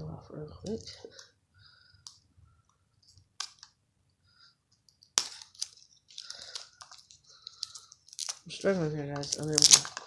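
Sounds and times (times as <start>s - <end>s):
plastic wrap crinkling: 5.1s - 10.0s.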